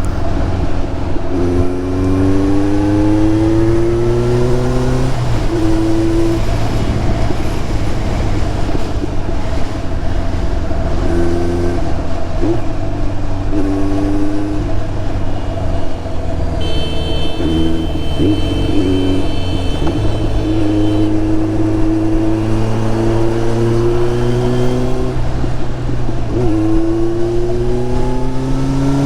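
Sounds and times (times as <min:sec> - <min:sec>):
road and wind noise: 0:00.0 - 0:29.0
motorcycle engine running: 0:14.7 - 0:22.7
high steady tones: 0:16.6 - 0:21.2.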